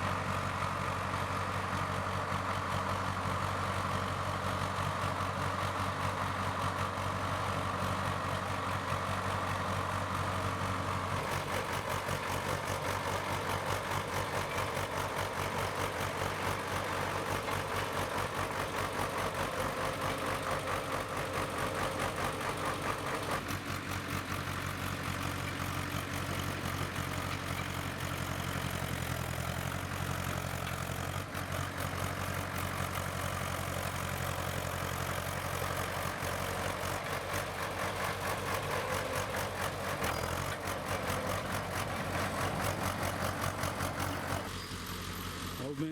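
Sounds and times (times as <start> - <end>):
bulldozer diesel engine running: 0.0 - 45.9.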